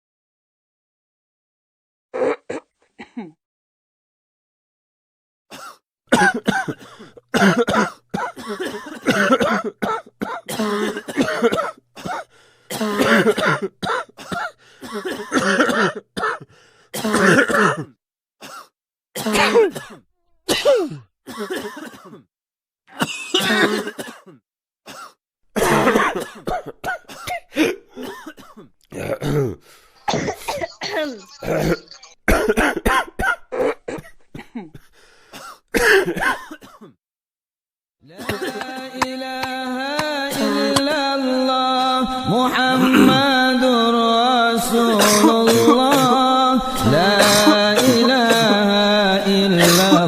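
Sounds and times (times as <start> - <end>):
person coughing: 5.5 - 22.3, 22.9 - 37.0, 38.2 - 38.9, 42.7 - 43.3, 44.9 - 46.2, 46.8 - 48.8, 49.6 - 50.0
throat clearing: 18.5 - 22.3, 22.9 - 26.7, 27.3 - 34.8, 42.8 - 43.2, 49.6 - 50.0.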